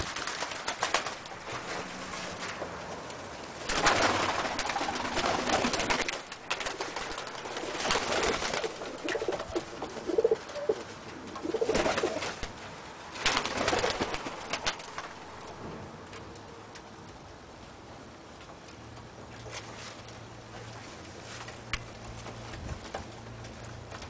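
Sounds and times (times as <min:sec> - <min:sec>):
pigeons cooing: 0:04.1 - 0:06.1, 0:08.0 - 0:12.4.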